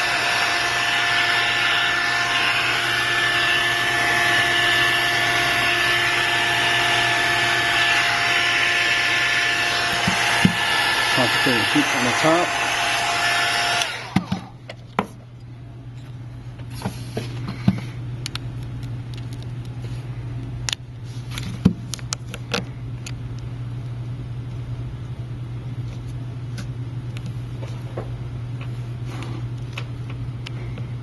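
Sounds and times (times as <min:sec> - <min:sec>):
heat gun blowing: 0:00.0 - 0:14.5
steady low hum: 0:00.0 - 0:31.0.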